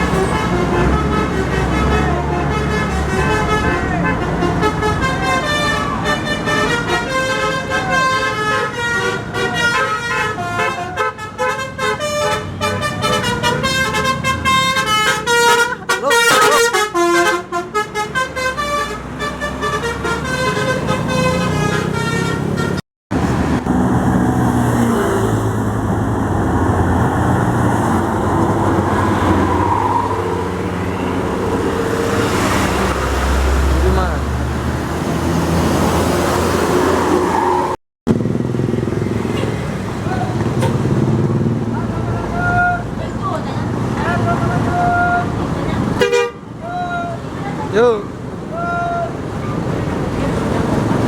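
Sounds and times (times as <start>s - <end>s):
musical bus horn playing a tune: 0.0s - 22.8s, 46.0s - 46.5s
bus engine rumble: 0.0s - 51.0s
road traffic: 0.0s - 51.0s.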